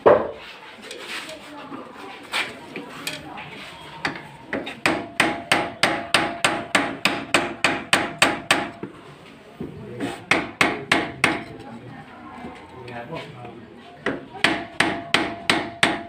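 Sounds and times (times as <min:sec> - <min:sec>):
hammer striking metal: 0:04.0 - 0:08.9, 0:10.3 - 0:11.5, 0:14.4 - 0:16.0.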